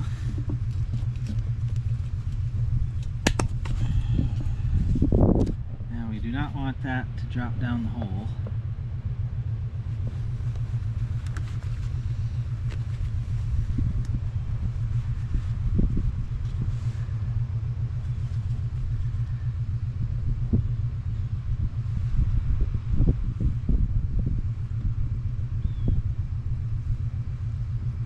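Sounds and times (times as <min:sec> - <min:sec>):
truck engine idling: 0:00.0 - 0:28.0.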